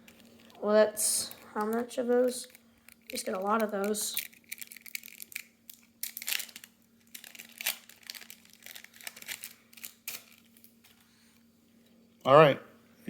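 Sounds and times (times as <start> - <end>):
cards crinkling and rustling: 0.0 - 0.6, 1.2 - 11.1
faint steady hum: 0.0 - 13.0.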